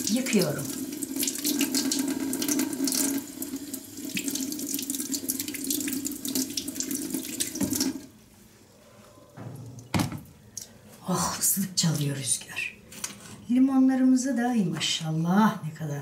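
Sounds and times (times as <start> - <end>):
tap running into sink: 7.2 - 8.1.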